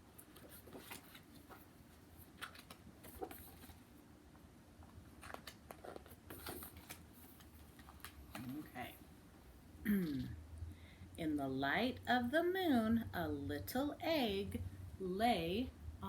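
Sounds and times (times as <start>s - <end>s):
book pages rustling: 0.0s - 4.0s, 4.8s - 8.9s.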